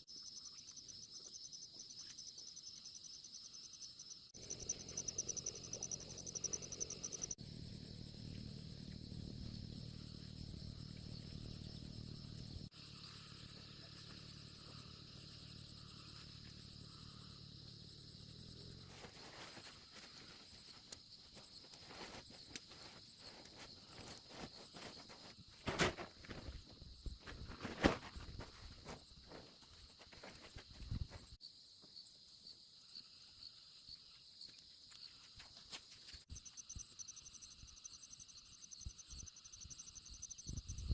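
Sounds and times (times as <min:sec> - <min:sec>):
crickets chirping: 0:00.0 - 0:40.9
rustles and crackles: 0:18.5 - 0:31.4.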